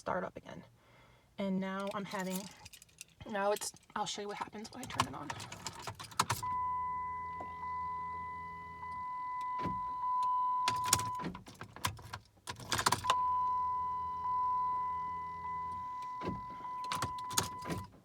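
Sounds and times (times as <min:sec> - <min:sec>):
keys jangling: 0:01.8 - 0:06.4.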